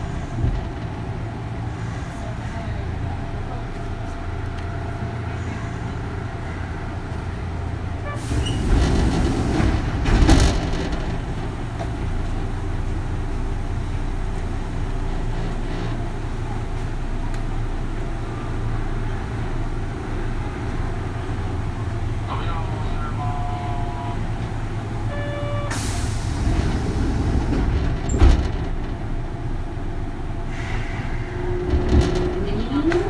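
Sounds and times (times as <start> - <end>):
train interior rumble: 0.0 - 33.0.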